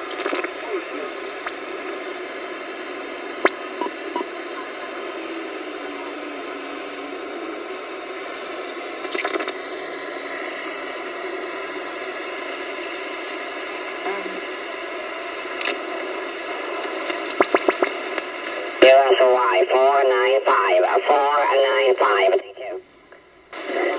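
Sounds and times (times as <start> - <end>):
radio static hiss: 0.0 - 23.9.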